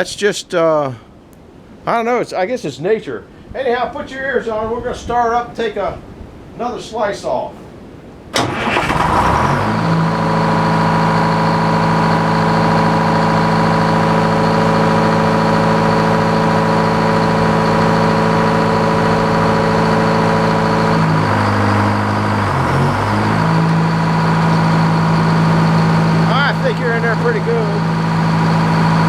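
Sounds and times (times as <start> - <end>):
sawmill engine running: 8.4 - 29.0.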